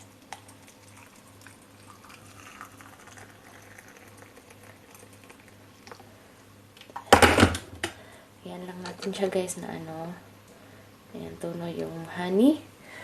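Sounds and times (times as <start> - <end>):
hot water bubbling and fizzing: 0.0 - 6.2.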